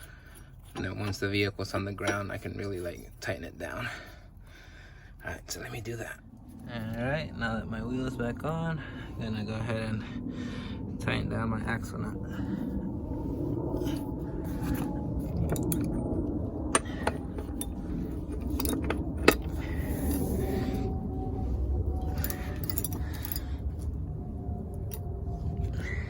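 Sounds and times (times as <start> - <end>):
steady low rumble: 0.0 - 26.0
metal tools clinking and scraping: 13.8 - 16.1, 16.7 - 20.9, 21.9 - 23.9.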